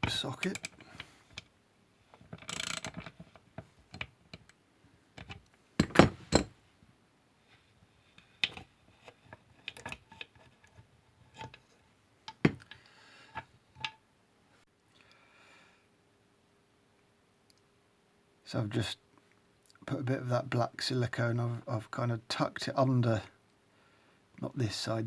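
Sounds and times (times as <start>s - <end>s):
ratchet metal clicks: 0.4s - 0.8s, 2.4s - 3.1s.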